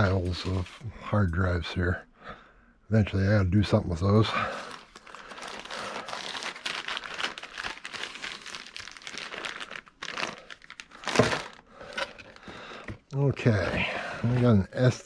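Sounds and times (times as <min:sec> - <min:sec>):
plastic bag crinkling: 0:04.4 - 0:14.8.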